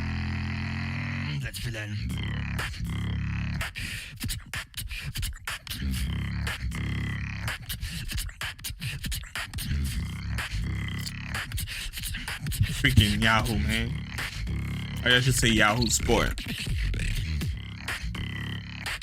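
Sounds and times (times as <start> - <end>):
deep buzzing bass tones: 0.0 - 1.3, 2.0 - 3.6, 12.6 - 16.4, 17.4 - 18.8.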